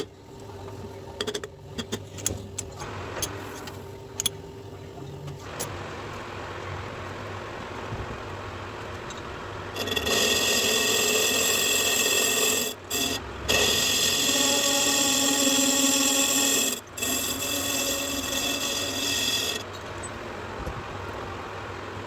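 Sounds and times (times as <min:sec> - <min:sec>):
lathe tool screeching on metal: 0:09.7 - 0:19.8.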